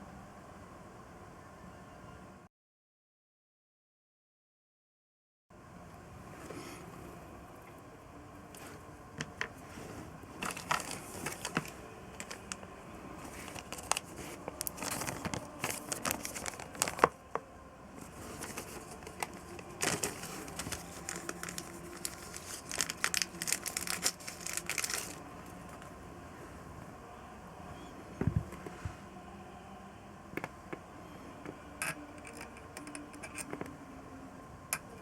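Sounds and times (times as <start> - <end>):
clicks taps and crinkling of handling: 10.4 - 17.5.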